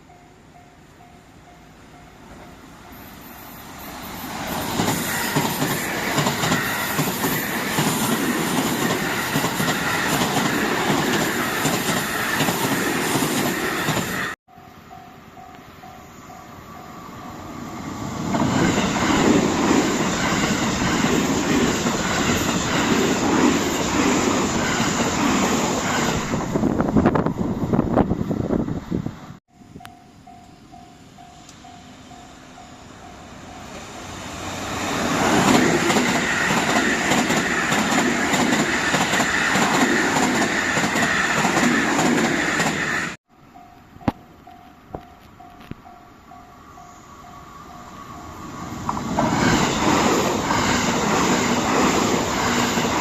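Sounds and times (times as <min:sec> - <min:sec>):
train wheels rushing on rails: 0:02.1 - 0:14.4, 0:16.3 - 0:29.4, 0:31.1 - 0:43.2, 0:44.0 - 0:53.0
train wheel squeal: 0:02.8 - 0:14.4, 0:44.6 - 0:53.0.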